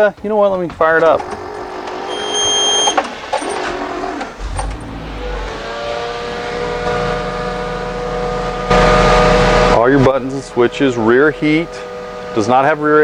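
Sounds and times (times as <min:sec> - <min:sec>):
bus engine starting and idling: 0:00.0 - 0:13.0
short high beep: 0:02.1 - 0:03.0.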